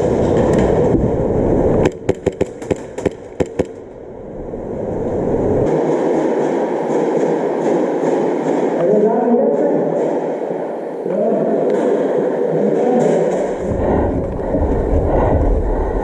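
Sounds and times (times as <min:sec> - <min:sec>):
low rumbling noise: 0:00.0 - 0:16.0
airsoft gun shots: 0:01.8 - 0:03.8.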